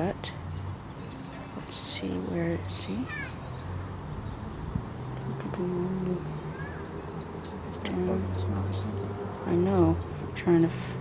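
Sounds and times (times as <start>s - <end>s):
small bird cheeping: 0.0s - 10.8s.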